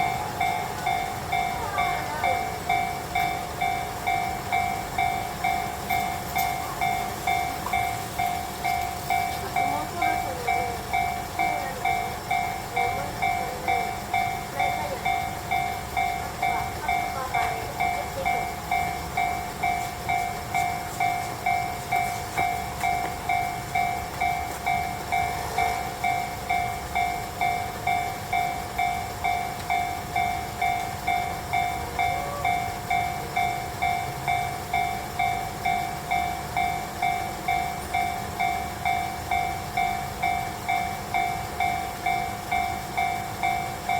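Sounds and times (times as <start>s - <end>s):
railroad crossing bell ringing: 0.0s - 43.9s.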